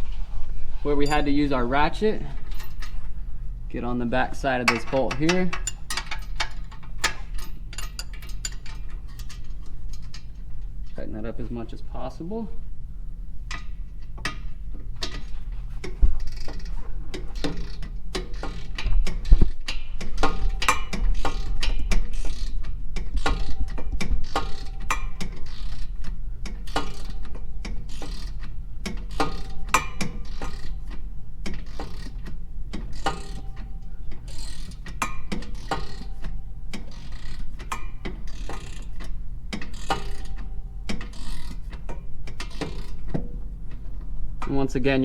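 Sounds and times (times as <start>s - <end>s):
ratchet wrench clicking: 4.7s - 10.4s, 13.5s - 43.2s.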